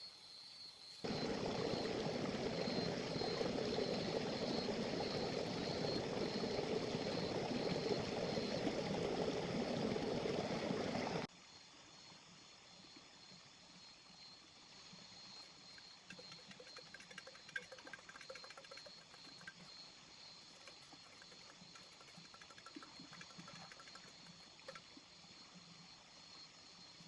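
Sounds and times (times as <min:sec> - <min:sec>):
soft patters of water: 0:01.0 - 0:11.3, 0:15.4 - 0:19.8, 0:20.4 - 0:25.2
steady hiss: 0:01.0 - 0:11.3
small river trickling and bubbling: 0:01.0 - 0:27.0.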